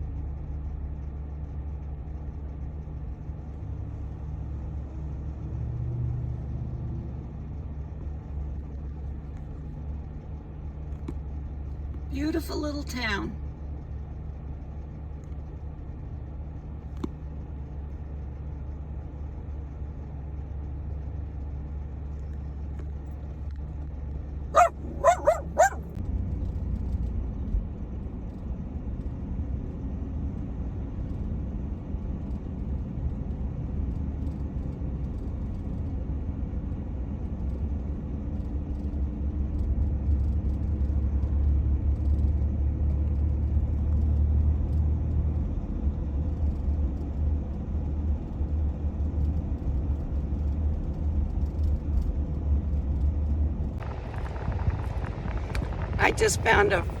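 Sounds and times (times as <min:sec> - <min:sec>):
road and engine rumble in car: 0:00.0 - 0:57.0
small dog barking: 0:24.5 - 0:26.0.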